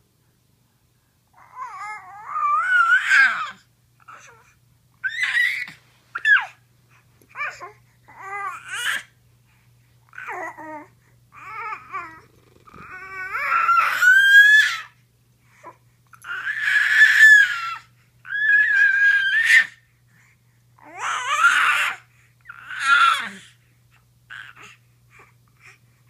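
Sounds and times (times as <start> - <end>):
baby vocalizing high-pitched calls: 1.4 - 4.4, 5.0 - 6.6, 12.8 - 15.0, 16.2 - 19.8, 20.8 - 23.4.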